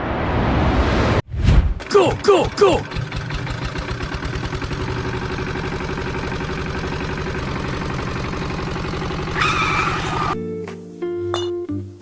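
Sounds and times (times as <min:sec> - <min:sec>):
engine running steadily: 0:02.6 - 0:09.4.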